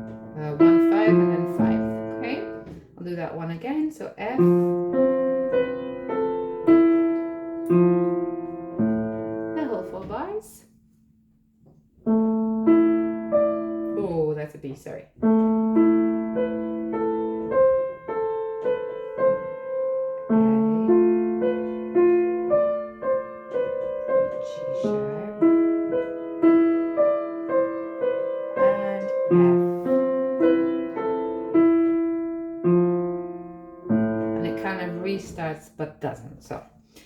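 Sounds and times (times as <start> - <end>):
piano single notes: 0.0 - 36.6.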